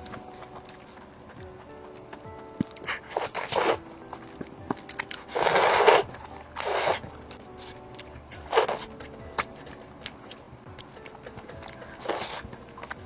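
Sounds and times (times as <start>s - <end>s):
person eating bites: 2.6s - 7.0s, 7.6s - 10.4s.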